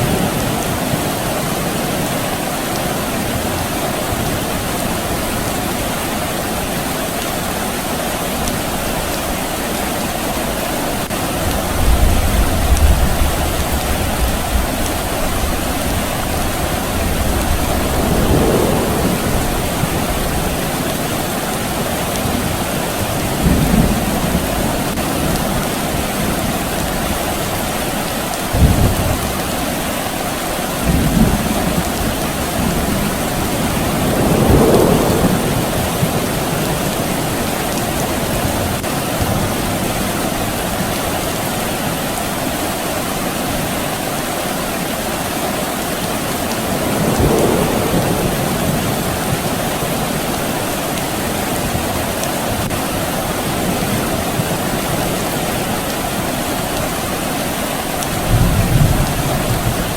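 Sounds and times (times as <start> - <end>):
steady rain: 0.0 - 59.9
distant thunder rumbling: 10.5 - 27.7, 28.5 - 29.9, 30.8 - 40.8, 46.4 - 59.9
sharp thunderclap: 11.6 - 21.4, 28.5 - 29.4, 30.8 - 37.4, 46.7 - 50.2.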